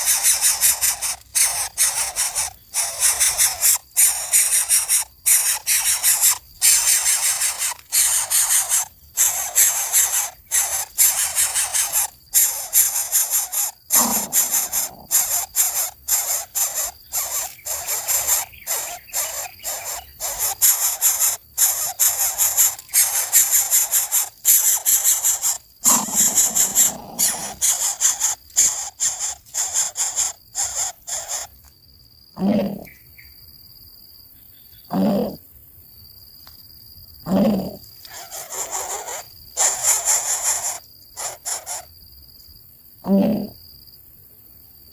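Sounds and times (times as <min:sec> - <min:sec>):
chicks begging calls: 0:00.0 - 0:31.6, 0:38.1 - 0:41.9.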